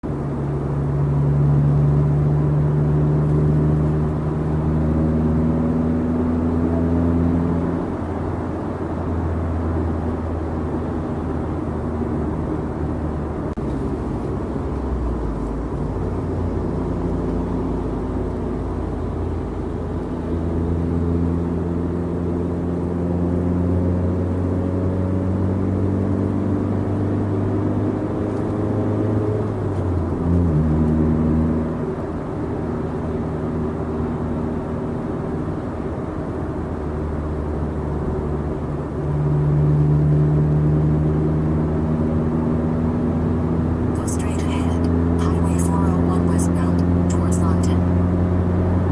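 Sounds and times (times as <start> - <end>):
tyre and road noise: 0.0 - 20.1
low exhaust drone: 0.0 - 48.9.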